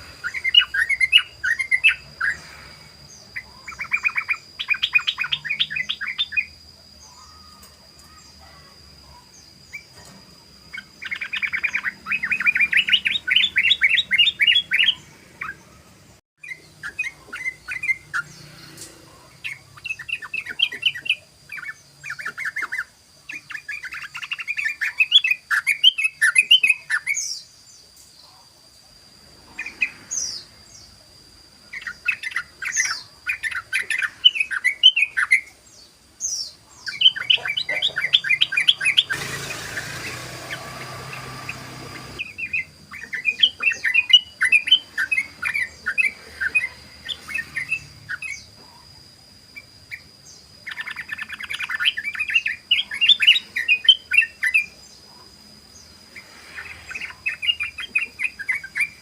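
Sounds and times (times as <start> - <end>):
bulbul chattering song: 0.0 - 27.6, 31.6 - 59.0
hiss: 38.9 - 42.2.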